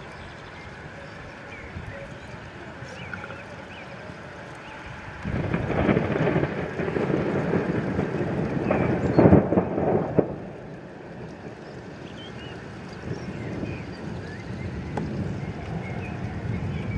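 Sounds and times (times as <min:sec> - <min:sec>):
thunder rumbling and crashing: 0:05.0 - 0:16.9
sharp thunder crack: 0:05.3 - 0:10.6.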